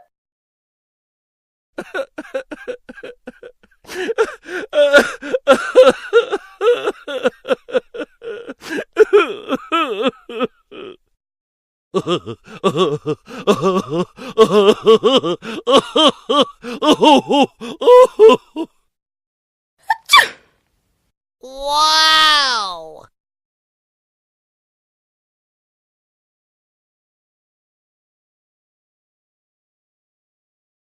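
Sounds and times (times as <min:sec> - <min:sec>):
person gasping and groaning: 0:03.8 - 0:07.4, 0:08.0 - 0:11.0, 0:12.0 - 0:18.7, 0:21.4 - 0:23.0.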